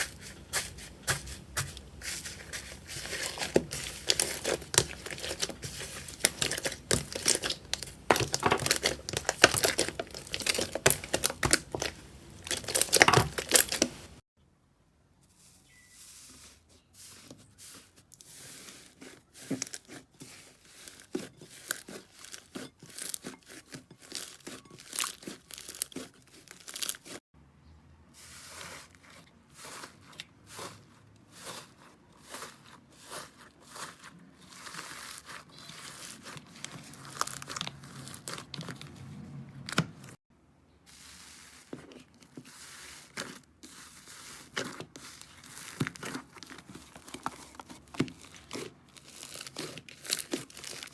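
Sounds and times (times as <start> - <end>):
slime squished by hand: 0.6 - 14.2.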